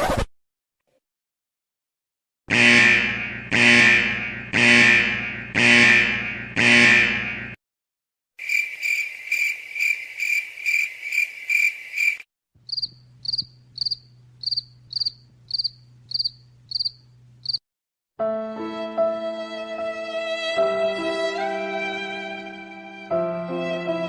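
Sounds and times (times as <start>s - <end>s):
crickets chirping: 8.4s - 17.6s.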